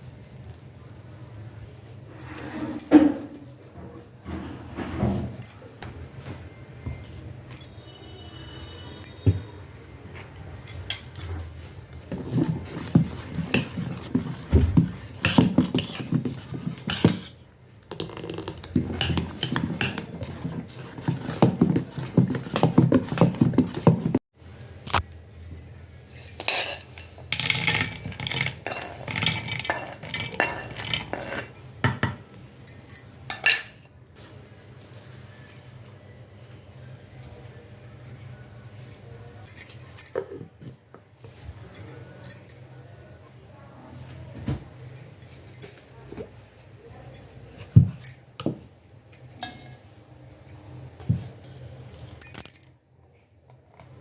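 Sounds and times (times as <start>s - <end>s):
kitchen utensils clattering: 2.2s - 6.0s, 10.2s - 17.4s, 26.2s - 33.9s, 49.3s - 49.9s.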